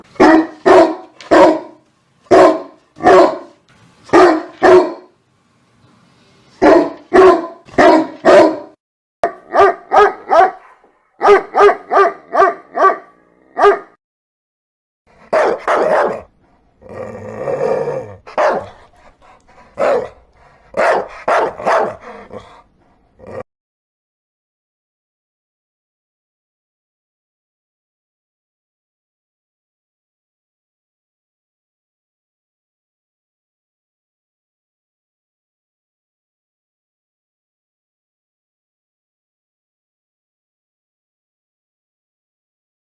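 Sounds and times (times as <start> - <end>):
dogs barking: 0.0 - 5.1, 6.6 - 14.0, 15.2 - 16.3, 18.2 - 22.6.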